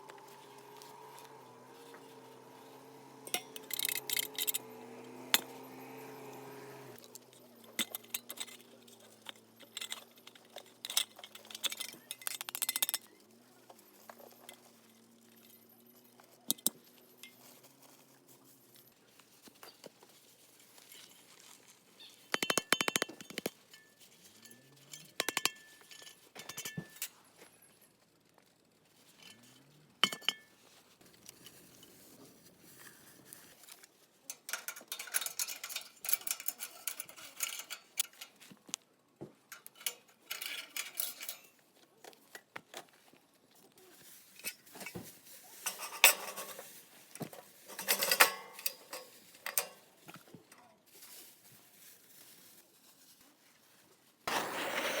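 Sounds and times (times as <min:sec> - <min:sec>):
light clinks and knocks: 0:00.0 - 0:20.1, 0:33.7 - 0:38.5, 0:39.5 - 0:41.6, 0:44.3 - 0:50.6.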